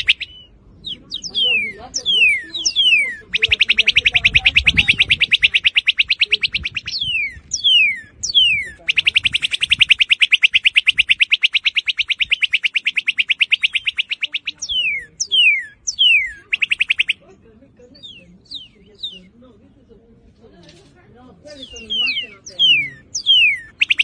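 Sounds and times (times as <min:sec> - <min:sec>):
bird fast trill: 0:00.0 - 0:17.2, 0:21.5 - 0:24.0
bird whistling downslurred notes: 0:00.0 - 0:17.2, 0:21.5 - 0:24.0.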